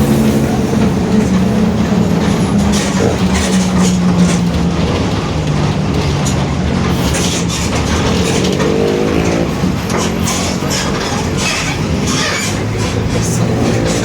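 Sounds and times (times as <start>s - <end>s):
bus diesel engine drone: 0.0s - 14.0s.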